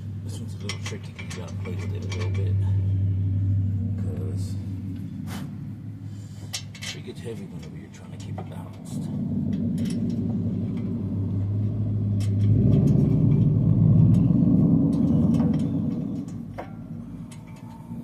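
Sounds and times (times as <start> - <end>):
low rumble: 0.0 - 18.0.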